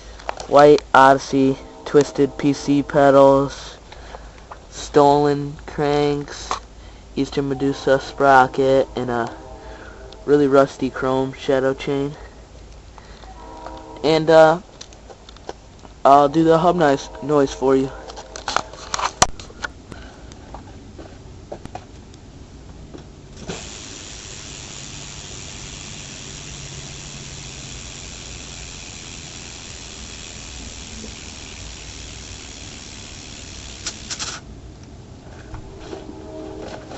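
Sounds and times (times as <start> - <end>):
bike hub ratchet clicking: 23.4 - 34.4.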